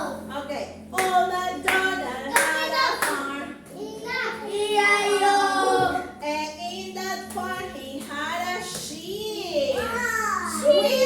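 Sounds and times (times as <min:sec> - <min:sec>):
children singing: 0:03.8 - 0:06.2.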